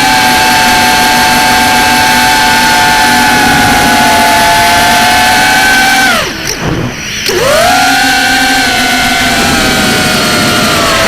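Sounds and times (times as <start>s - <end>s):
drone motors whining: 0.0s - 11.0s.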